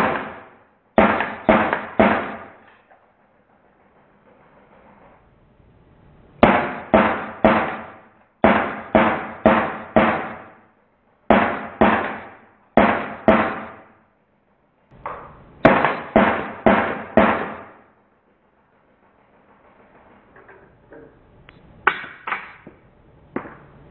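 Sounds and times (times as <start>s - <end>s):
air gun shots cracking: 0.0s - 2.7s, 6.4s - 10.7s, 11.3s - 14.0s, 15.6s - 17.9s.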